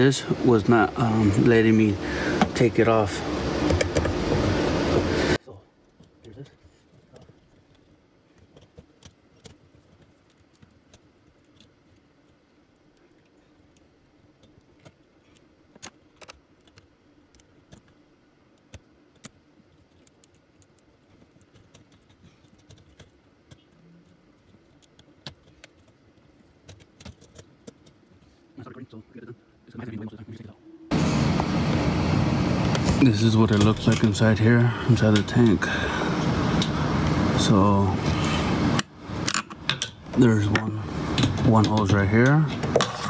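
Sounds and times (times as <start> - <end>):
faint steady hum: 0.0 - 43.0.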